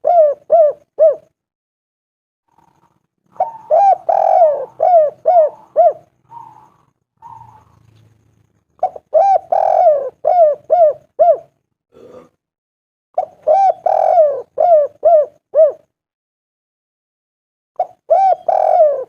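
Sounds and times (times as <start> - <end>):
dove cooing: 0.0 - 1.4, 2.5 - 8.1, 8.8 - 11.6, 13.2 - 15.9, 17.8 - 19.0.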